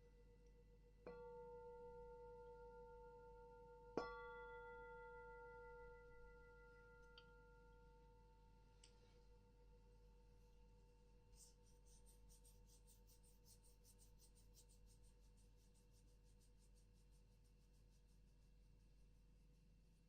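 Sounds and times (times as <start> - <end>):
singing bowl ringing: 4.0 - 8.0.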